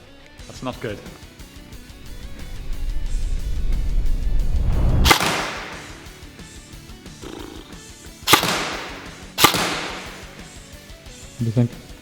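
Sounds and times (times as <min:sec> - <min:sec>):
airsoft rifle shots: 0:05.0 - 0:06.1, 0:08.2 - 0:10.6.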